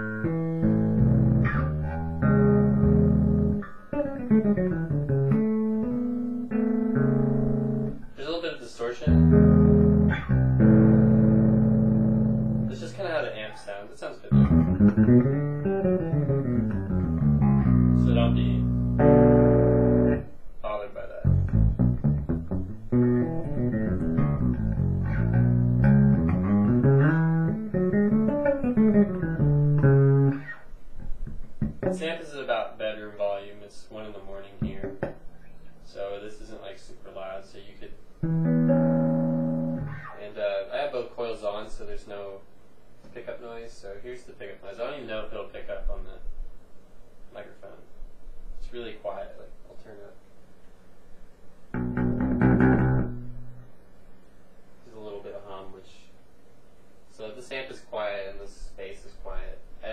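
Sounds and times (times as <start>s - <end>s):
distorted electric bass notes: 0.0s - 8.0s, 9.1s - 13.0s, 14.3s - 20.3s, 21.2s - 30.5s, 31.3s - 32.1s, 38.2s - 40.1s, 51.7s - 53.7s.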